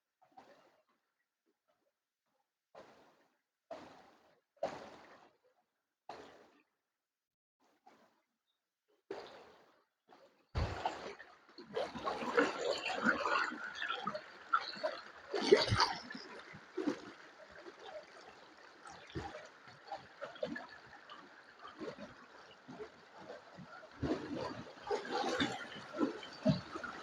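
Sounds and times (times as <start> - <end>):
running water trickling and splashing: 10.6 - 27.0.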